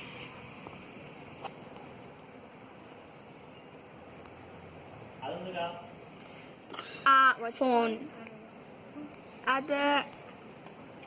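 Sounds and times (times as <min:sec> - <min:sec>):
faint outdoor ambient hiss: 0:00.0 - 0:11.0.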